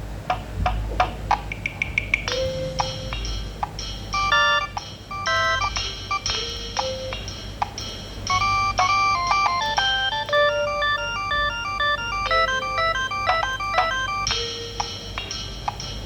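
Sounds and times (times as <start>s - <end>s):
faint low hum: 0.0s - 15.3s
synthetic phone ringtone: 4.1s - 6.6s, 8.3s - 14.8s.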